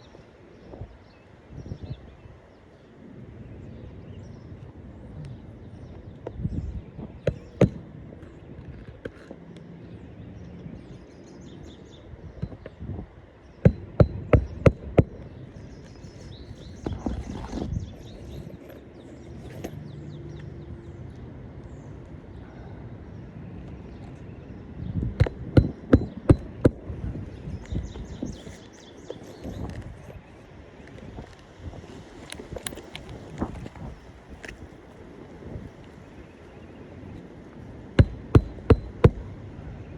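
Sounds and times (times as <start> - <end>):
hammer striking nails: 13.7 - 15.2, 25.2 - 26.8, 38.0 - 39.3.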